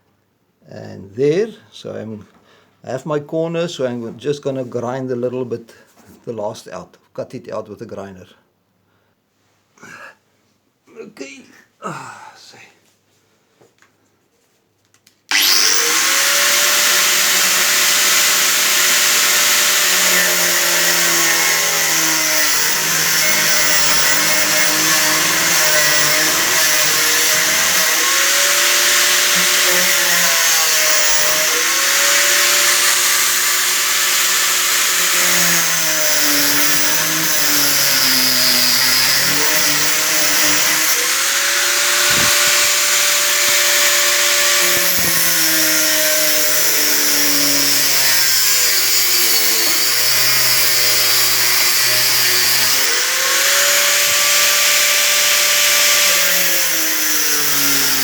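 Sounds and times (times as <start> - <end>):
angle grinder cutting metal: 15.3 - 58.0.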